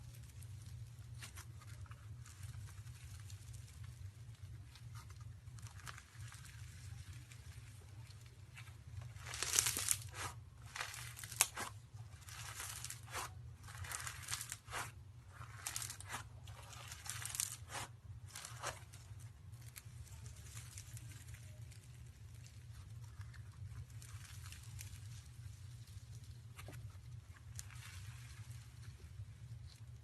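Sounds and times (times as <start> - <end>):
slime crackling and popping: 0.0 - 30.0.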